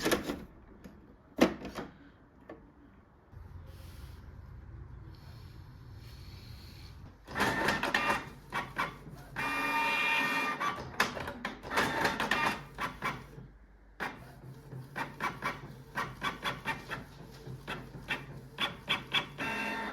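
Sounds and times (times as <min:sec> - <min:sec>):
printer clicking and whirring: 0:00.0 - 0:02.7, 0:07.2 - 0:19.9
printer whine: 0:07.2 - 0:19.9
printer sharp ticks: 0:07.3 - 0:13.3, 0:17.6 - 0:19.9.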